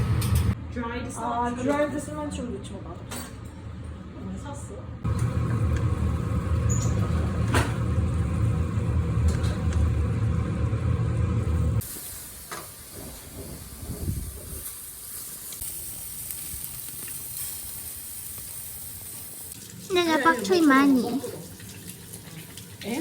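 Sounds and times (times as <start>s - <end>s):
steady sizzling hiss: 11.8s - 23.0s.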